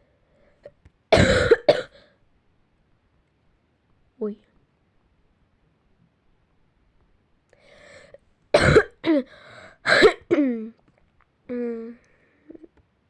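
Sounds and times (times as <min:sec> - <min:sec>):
person coughing harshly: 0:01.1 - 0:02.0, 0:08.6 - 0:09.3, 0:09.9 - 0:10.5
breath in: 0:07.6 - 0:08.2, 0:09.3 - 0:09.9.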